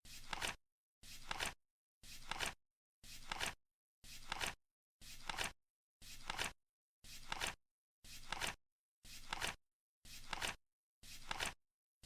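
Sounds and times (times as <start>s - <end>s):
flip clock card flapping: 1.2s - 1.6s, 4.2s - 4.6s, 5.2s - 5.5s, 6.2s - 6.6s, 8.2s - 8.6s, 9.2s - 9.6s, 10.2s - 10.6s, 11.2s - 11.6s.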